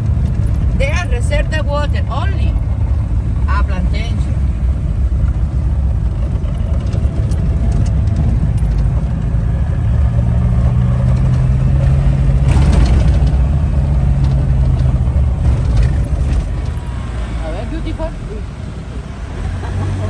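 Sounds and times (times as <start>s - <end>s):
jeep engine running: 0.0s - 20.0s.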